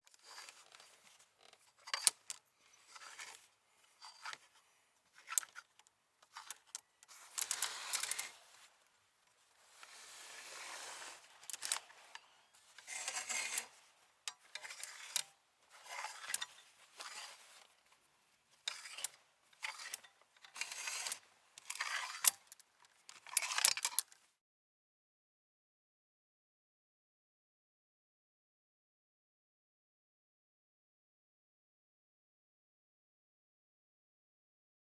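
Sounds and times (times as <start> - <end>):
clothes hangers clattering: 0.1 - 4.5, 5.2 - 8.8, 9.7 - 17.7, 18.7 - 24.1
hangers scraping along rod: 0.1 - 8.8, 9.6 - 17.7, 18.7 - 22.4.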